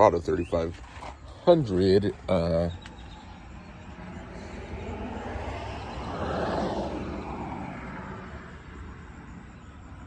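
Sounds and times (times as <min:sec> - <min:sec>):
low traffic rumble: 0:00.0 - 0:10.0
vehicle passing by: 0:03.0 - 0:10.0.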